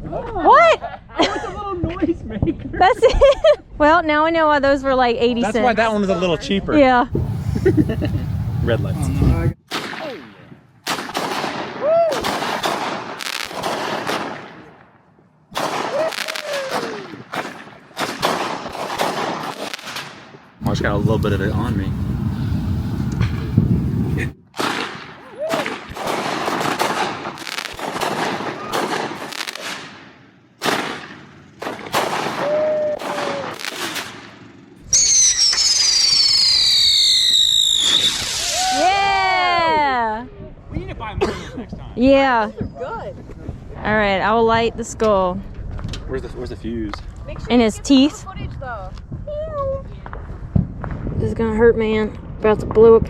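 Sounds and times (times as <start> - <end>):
firework crackling pops: 7.1 - 14.7, 15.5 - 38.8, 49.8 - 51.2
brief whistle: 34.9 - 38.8
high whistle falling in pitch: 34.9 - 38.8.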